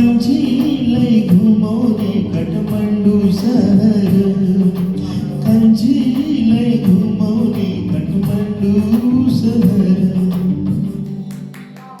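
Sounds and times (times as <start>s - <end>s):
man singing with instrumental backing: 0.0s - 11.4s.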